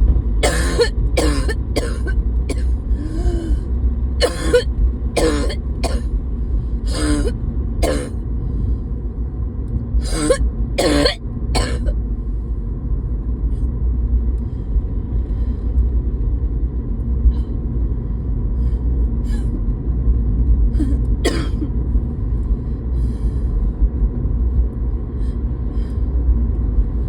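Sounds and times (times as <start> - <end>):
steady low rumble: 0.0 - 27.0
person coughing: 0.4 - 3.6, 4.2 - 6.1, 6.9 - 8.1, 10.0 - 11.9, 20.8 - 21.7.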